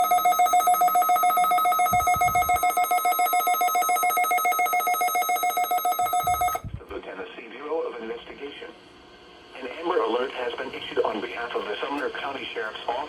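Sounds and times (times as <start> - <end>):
pulsing alarm tone: 0.0 - 6.6.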